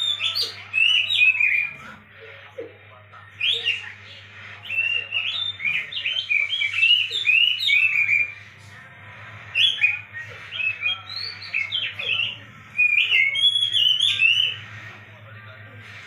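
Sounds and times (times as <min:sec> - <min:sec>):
bird singing whistled phrases: 0:04.7 - 0:08.4, 0:09.5 - 0:14.6.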